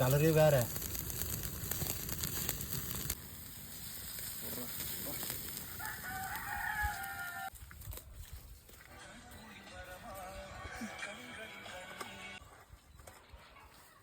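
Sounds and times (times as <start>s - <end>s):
steady hiss: 0.0s - 6.1s
rooster crowing: 5.7s - 7.5s.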